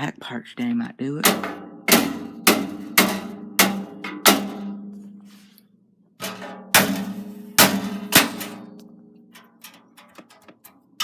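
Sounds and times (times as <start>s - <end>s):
knocks on metal computer case: 1.3s - 4.9s, 6.3s - 8.7s.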